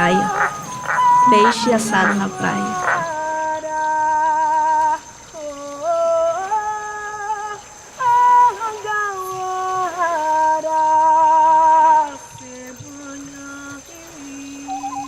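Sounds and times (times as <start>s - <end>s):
woman singing wordless held notes: 0.0s - 4.0s.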